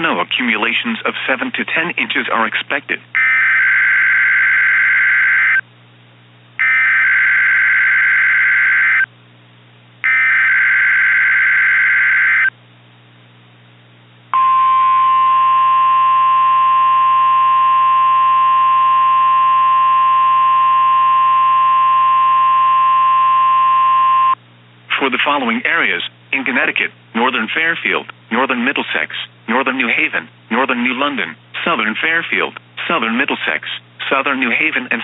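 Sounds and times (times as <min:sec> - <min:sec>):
steady single-tone attention signal: 0:14.4 - 0:24.4.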